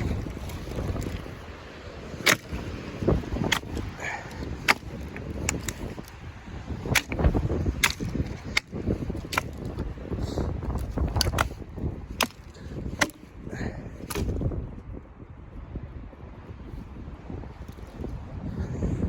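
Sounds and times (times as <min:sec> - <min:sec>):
sharp cracks: 0:02.2 - 0:02.7, 0:06.8 - 0:09.8.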